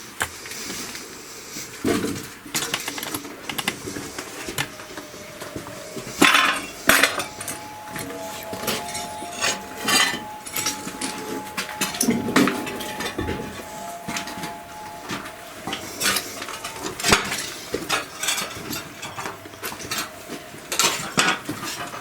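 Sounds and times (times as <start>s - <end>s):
faint high tone: 3.9s - 22.0s.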